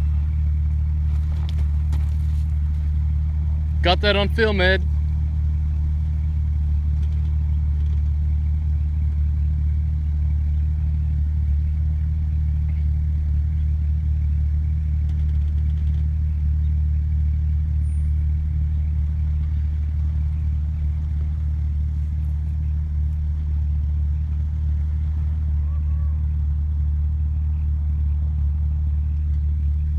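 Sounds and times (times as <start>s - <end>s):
car engine idling: 0.0s - 29.9s.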